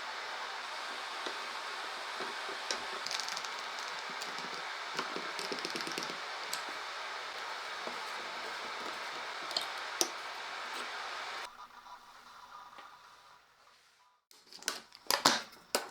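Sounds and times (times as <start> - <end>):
steady background hiss: 0.0 - 14.2
light clicking and scratching: 0.8 - 11.4.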